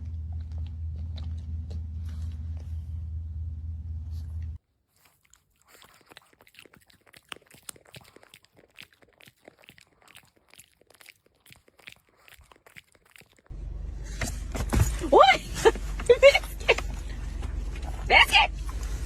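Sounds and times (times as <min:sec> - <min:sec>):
puppy chewing: 0:00.0 - 0:03.2, 0:04.1 - 0:14.2
low hum: 0:00.0 - 0:04.6, 0:13.5 - 0:19.0.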